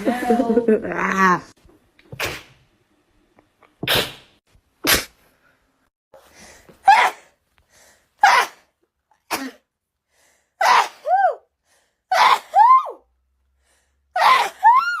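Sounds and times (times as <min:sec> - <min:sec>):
woman sneezing: 0:09.3 - 0:09.6.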